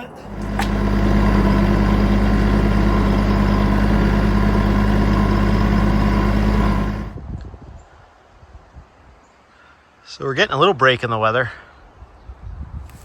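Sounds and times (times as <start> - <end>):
tractor engine running: 0.0 - 7.2.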